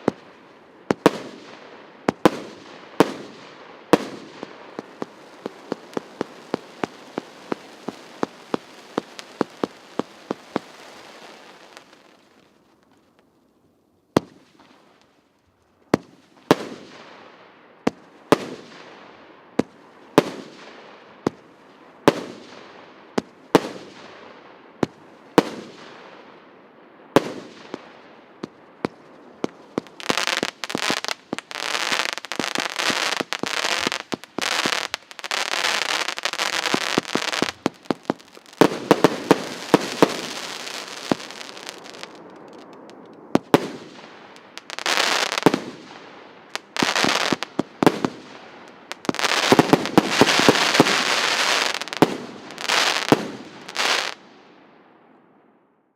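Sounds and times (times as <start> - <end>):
firework bangs: 0.0 - 12.2, 27.2 - 54.2
firework crackling: 0.0 - 13.3, 27.2 - 54.2
firework hiss: 29.7 - 42.7, 44.5 - 45.8, 48.9 - 54.2.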